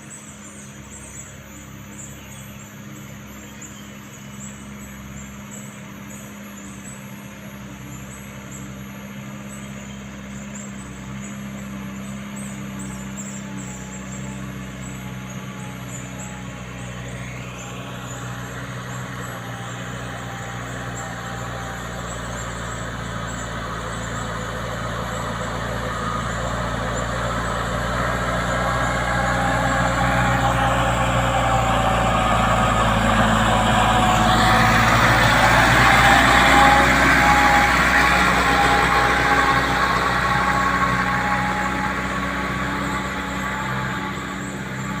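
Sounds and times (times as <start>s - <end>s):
diesel engine running: 0.0s - 45.0s.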